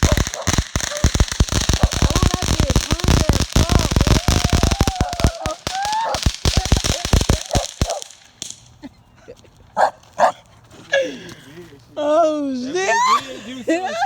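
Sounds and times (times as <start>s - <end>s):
fireworks cracking and popping: 0.0s - 8.8s.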